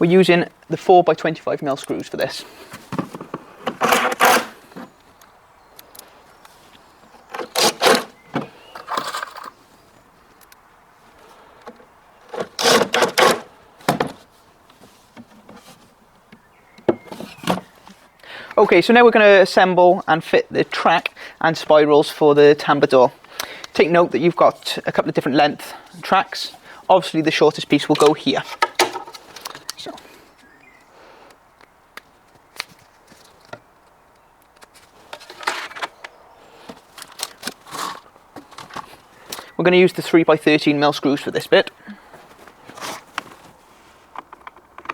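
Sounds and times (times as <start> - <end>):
wooden panels scraping: 2.4 - 5.0, 7.1 - 9.6, 11.7 - 16.0, 16.8 - 18.0, 27.7 - 30.1, 34.7 - 39.5, 42.4 - 44.9
short scrapes and knocks: 2.6 - 5.0, 7.3 - 9.6, 12.3 - 14.2, 28.0 - 29.6.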